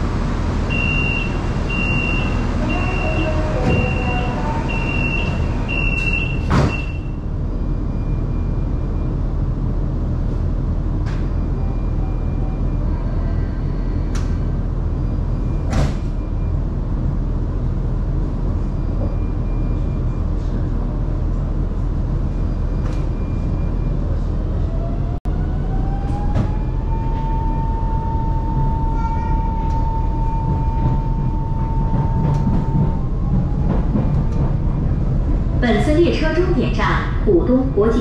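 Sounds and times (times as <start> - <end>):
train rumbling: 0.0 - 38.0.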